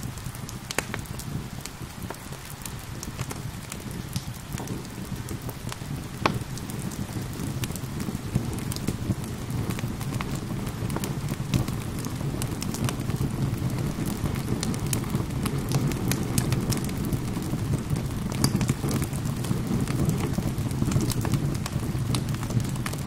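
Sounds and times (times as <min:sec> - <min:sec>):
wood fire crackling and popping: 0:00.0 - 0:23.0.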